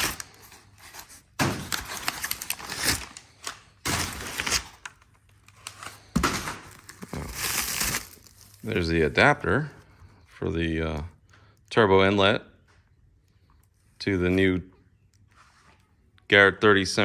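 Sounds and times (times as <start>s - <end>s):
cardboard and packing rustling: 0.0s - 9.7s.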